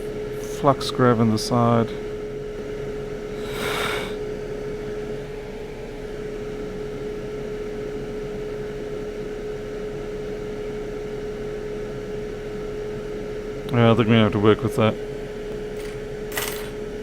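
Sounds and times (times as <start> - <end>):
fan whirring: 0.0 - 7.2, 11.9 - 17.0
constant hum-like tone: 0.0 - 17.0.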